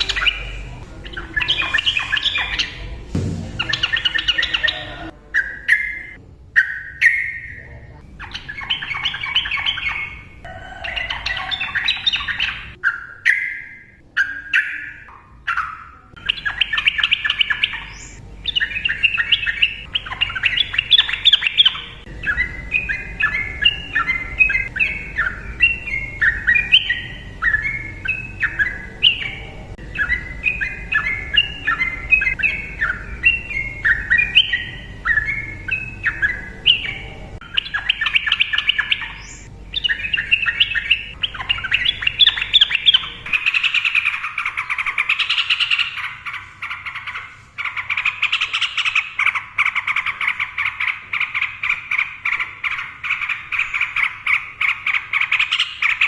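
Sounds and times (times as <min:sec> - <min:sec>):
bird chattering: 0:00.0 - 0:56.0
bird singing whistled phrases: 0:03.6 - 0:46.1.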